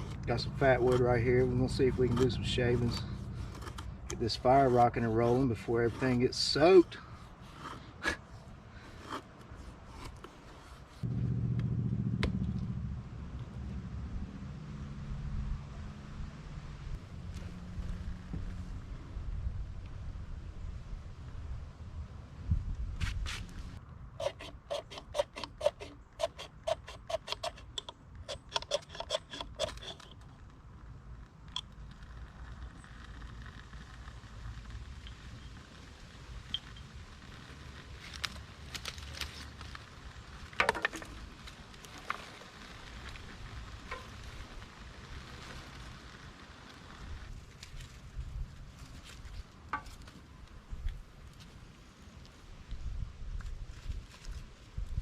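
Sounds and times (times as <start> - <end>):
knife scraping wood: 0.0 - 11.0, 24.2 - 30.3
low engine-like drone: 11.0 - 19.6.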